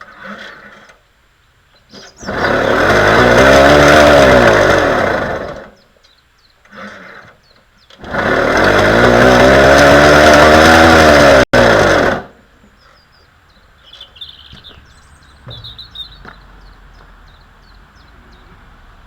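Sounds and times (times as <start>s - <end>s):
birds chirping faintly: 0.0s - 2.6s, 5.6s - 8.1s, 12.3s - 19.0s
moped engine starting: 1.9s - 5.9s, 6.6s - 12.5s.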